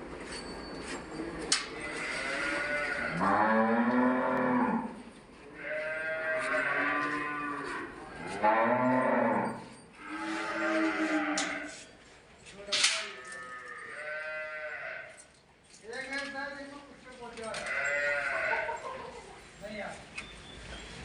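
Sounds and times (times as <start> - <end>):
cows mooing: 1.8 - 5.0, 5.6 - 11.7, 13.2 - 15.2.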